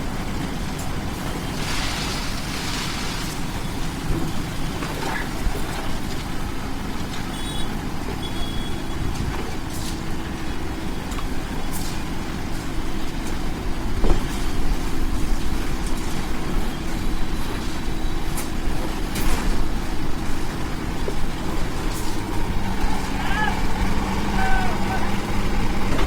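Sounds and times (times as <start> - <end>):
heavy engine rumbling: 0.0 - 26.0
hissing rush: 21.4 - 26.0.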